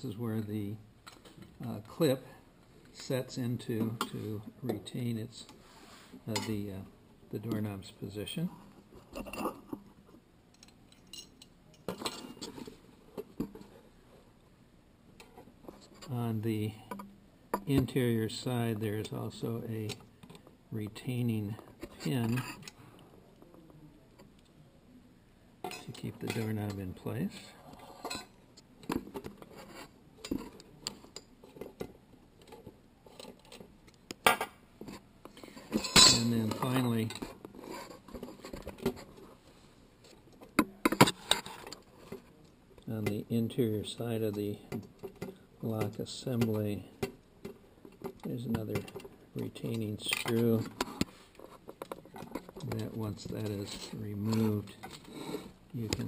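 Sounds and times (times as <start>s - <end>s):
metal lock parts clinking: 10.5s - 12.6s.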